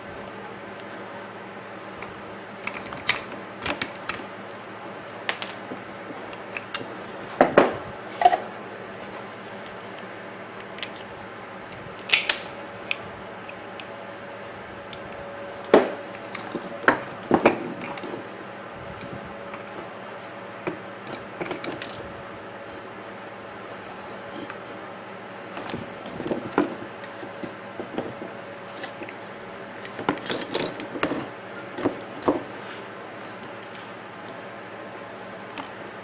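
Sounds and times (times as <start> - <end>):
faint steady hum: 0.0 - 36.0
plastic and metal parts clicking: 11.6 - 13.9.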